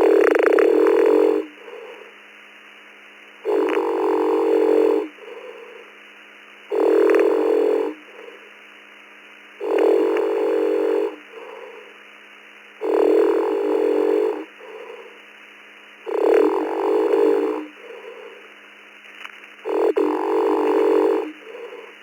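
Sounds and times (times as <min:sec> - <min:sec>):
man snoring over radio: 0:00.0 - 0:02.3, 0:03.4 - 0:06.0, 0:06.6 - 0:08.8, 0:09.6 - 0:12.1, 0:12.8 - 0:15.3, 0:16.0 - 0:18.6, 0:19.6 - 0:22.0
faint breath out: 0:05.2 - 0:06.0, 0:11.3 - 0:12.0, 0:14.6 - 0:15.3, 0:17.8 - 0:18.6, 0:21.3 - 0:22.0.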